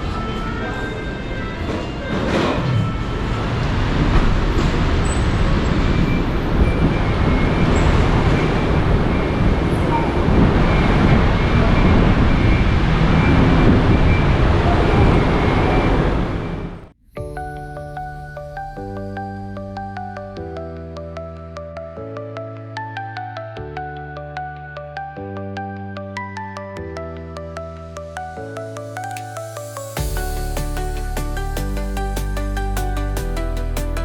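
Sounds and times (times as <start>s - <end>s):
loud road traffic: 0.0s - 16.9s.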